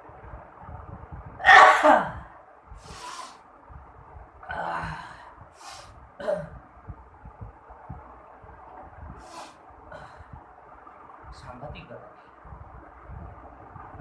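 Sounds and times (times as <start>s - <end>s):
sniffs and breaths: 2.8s - 3.4s, 5.2s - 6.0s, 9.2s - 10.4s.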